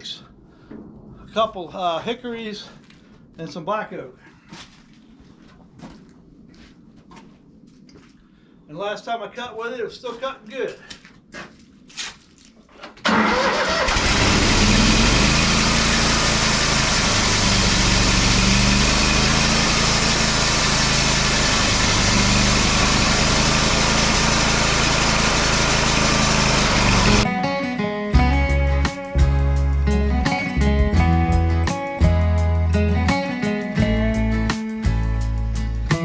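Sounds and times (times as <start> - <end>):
sawmill engine droning: 13.1 - 27.3.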